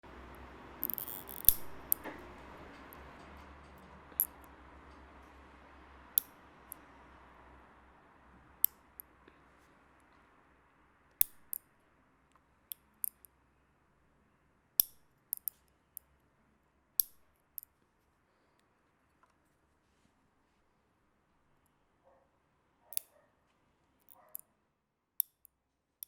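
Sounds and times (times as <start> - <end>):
nail clipper snips: 0.8 - 2.2, 14.8 - 15.5, 17.0 - 17.2.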